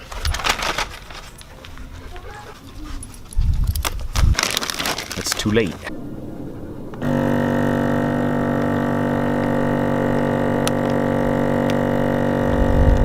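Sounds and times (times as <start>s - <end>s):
low musical drone: 4.6s - 13.0s.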